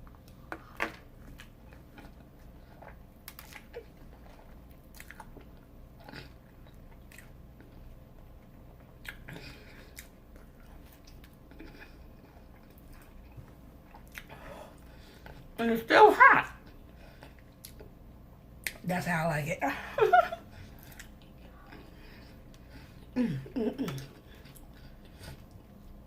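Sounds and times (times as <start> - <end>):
close-up chewing: 1.1 - 15.6, 16.6 - 18.0, 20.6 - 23.2, 23.9 - 26.0.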